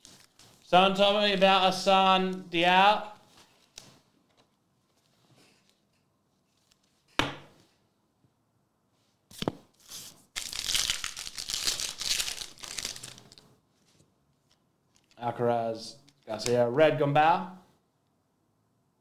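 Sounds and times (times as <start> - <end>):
wrapper tearing and crinkling: 9.8 - 13.5.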